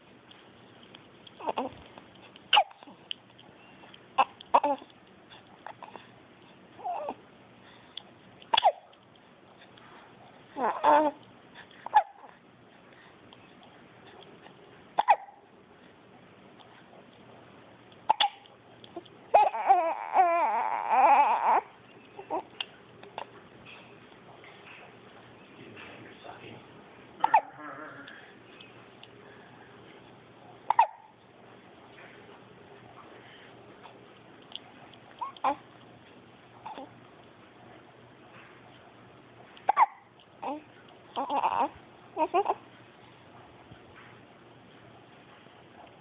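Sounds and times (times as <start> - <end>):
baby hiccupping: 1.4 - 3.1, 4.2 - 5.0, 5.6 - 6.0, 6.8 - 7.2, 8.5 - 9.0, 10.6 - 11.2, 11.8 - 12.3, 15.0 - 15.4, 18.0 - 23.3, 27.2 - 28.4, 30.7 - 31.2, 35.0 - 35.7, 36.6 - 37.0, 39.6 - 42.6
fussy baby squeaks: 2.5 - 2.9, 19.3 - 22.6, 27.2 - 28.1, 30.7 - 31.1, 35.2 - 35.6, 39.7 - 40.6, 41.2 - 42.6.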